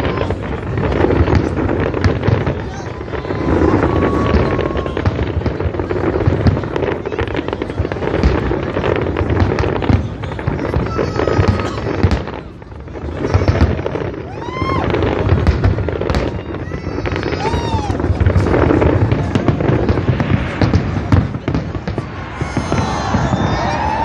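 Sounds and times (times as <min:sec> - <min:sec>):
fireworks bangs and crackling: 0:00.0 - 0:24.0.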